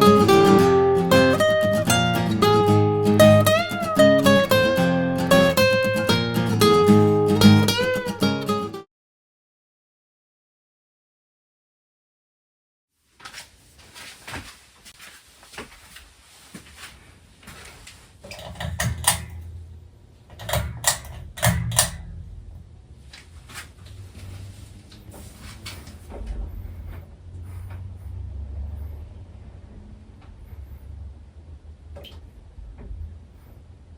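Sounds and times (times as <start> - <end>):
sharp clicks and knocks: 18.2 - 19.5, 20.3 - 22.3
low hum: 18.6 - 33.9.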